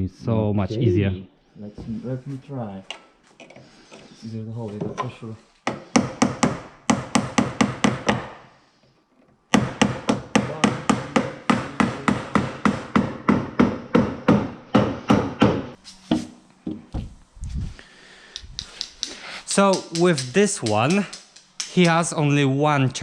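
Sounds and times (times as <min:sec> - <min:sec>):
hammer tapping nails into wood: 0:04.8 - 0:08.5, 0:09.5 - 0:15.7, 0:18.3 - 0:22.2.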